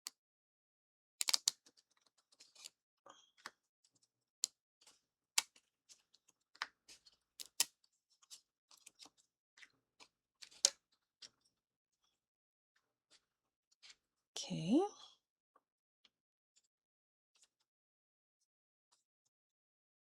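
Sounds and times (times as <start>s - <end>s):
small plastic parts clicking: 1.2s - 2.8s, 7.4s - 7.7s, 10.4s - 10.8s.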